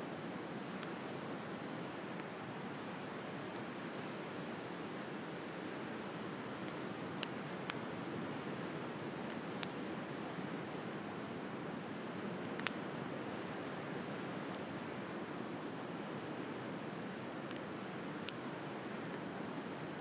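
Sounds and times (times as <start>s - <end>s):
bonfire crackling and popping: 6.6s - 7.9s, 12.4s - 12.9s.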